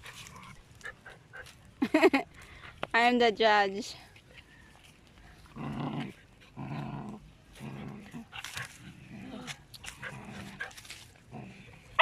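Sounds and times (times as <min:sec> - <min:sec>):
dogs growling: 0:05.4 - 0:12.0.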